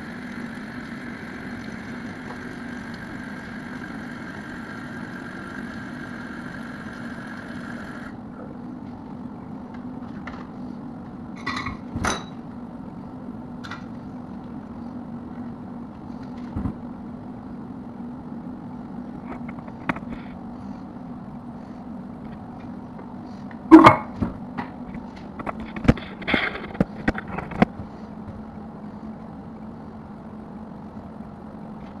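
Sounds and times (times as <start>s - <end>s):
low hum: 0.0s - 11.4s.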